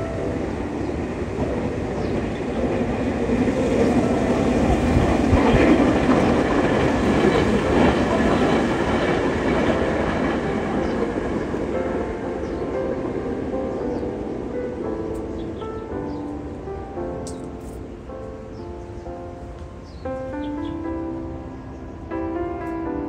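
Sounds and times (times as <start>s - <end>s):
train wheels clattering on rails: 0.8s - 13.1s.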